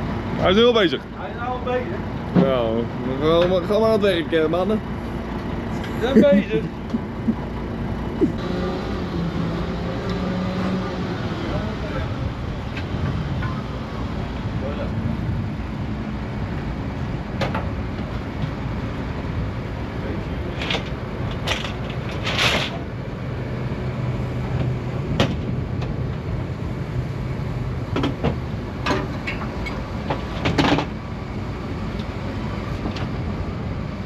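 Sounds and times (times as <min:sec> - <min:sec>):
low engine rumble: 0:00.0 - 0:34.0.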